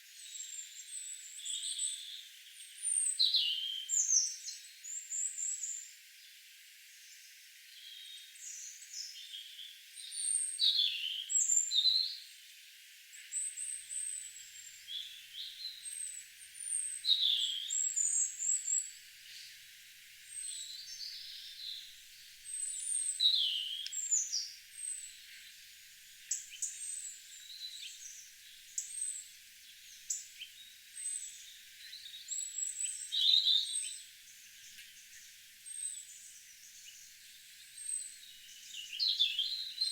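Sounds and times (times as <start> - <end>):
songbirds chirping and whistling: 13.2 - 19.6, 20.3 - 25.6, 26.2 - 39.9.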